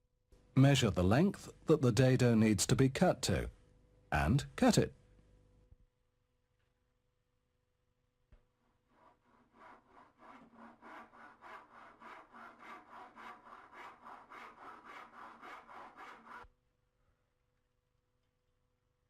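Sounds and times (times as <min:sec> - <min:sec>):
hand saw cutting wood: 0:08.9 - 0:16.5.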